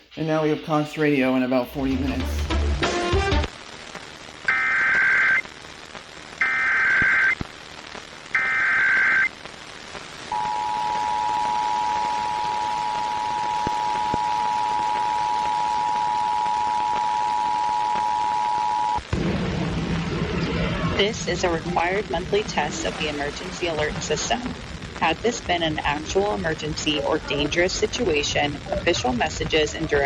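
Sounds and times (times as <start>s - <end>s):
digital data bursts: 4.5s - 5.5s, 8.3s - 9.4s.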